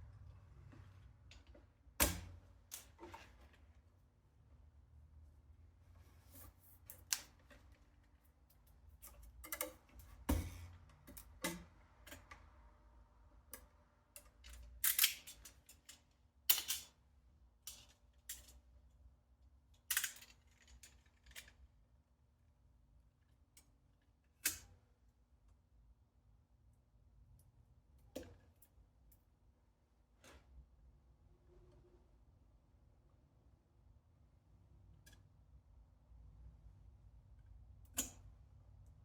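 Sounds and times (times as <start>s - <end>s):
faint steady hum: 0.0s - 14.8s
tools and small parts clicking: 8.5s - 10.2s, 13.5s - 17.0s, 17.7s - 18.6s, 19.7s - 21.7s.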